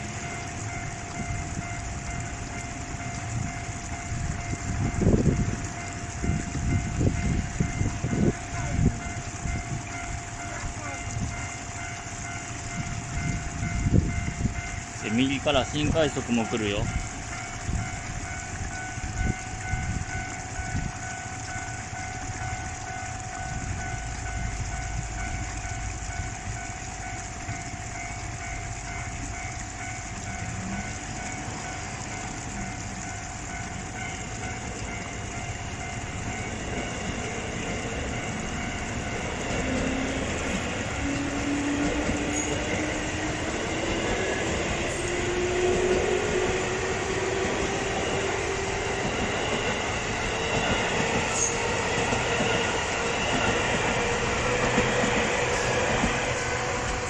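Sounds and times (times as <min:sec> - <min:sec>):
electric train approaching: 0:00.0 - 0:57.0
level-crossing warning bell clanging: 0:00.0 - 0:57.0
rising whine: 0:29.9 - 0:57.0.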